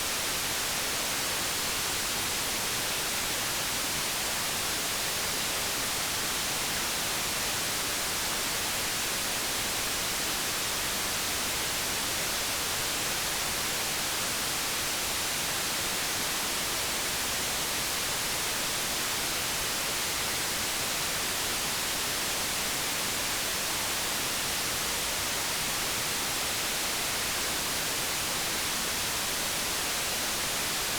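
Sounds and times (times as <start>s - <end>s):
white noise hiss: 0.0s - 30.9s.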